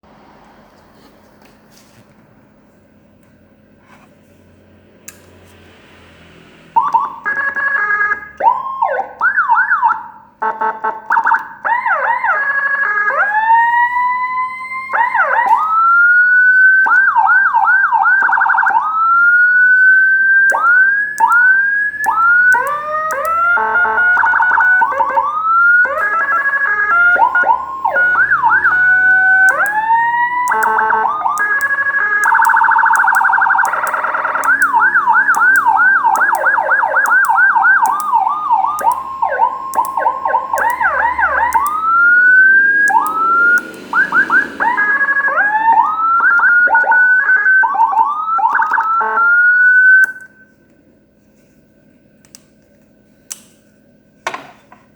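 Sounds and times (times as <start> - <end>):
electronic siren wailing and yelping: 6.6 - 50.4.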